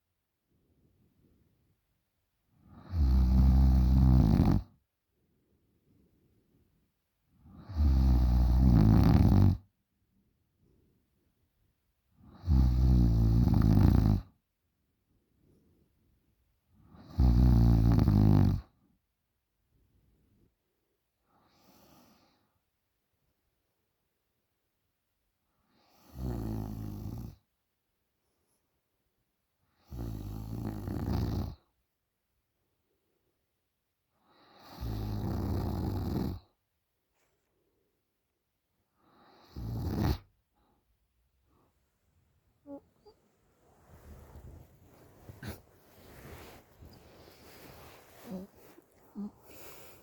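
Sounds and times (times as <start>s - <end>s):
woman snoring loudly: 7.6s - 9.6s, 44.0s - 50.0s.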